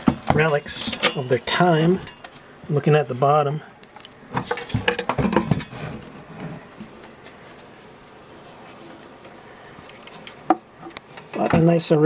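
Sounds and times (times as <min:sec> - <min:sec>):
radio being handled: 0:03.7 - 0:11.7.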